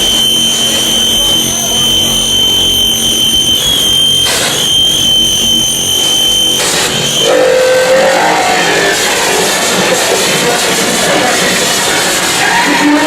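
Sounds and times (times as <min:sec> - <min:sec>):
low wavering tone: 0:00.0 - 0:08.0
harsh distorted noise music: 0:00.0 - 0:13.0
piercing high whine: 0:00.0 - 0:13.0.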